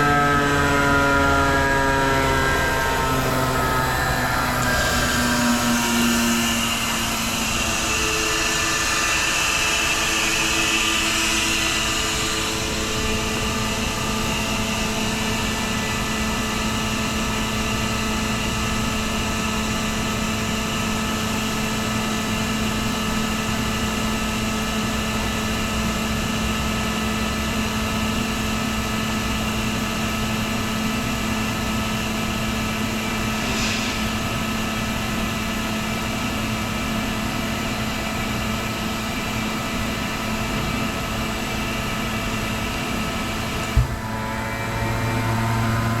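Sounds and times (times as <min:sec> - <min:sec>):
air compressor hum and whine: 0:00.0 - 0:46.0
air hiss: 0:33.4 - 0:34.3.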